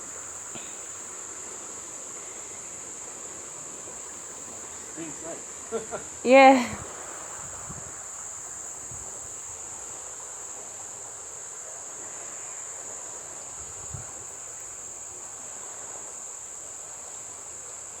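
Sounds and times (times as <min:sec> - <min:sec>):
insects chirring: 0:00.0 - 0:18.0.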